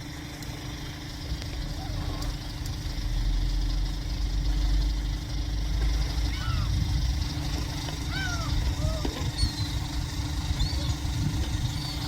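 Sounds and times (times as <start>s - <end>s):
low engine rumble: 0.0s - 12.0s
faint seagull call: 6.3s - 6.8s, 8.0s - 9.9s.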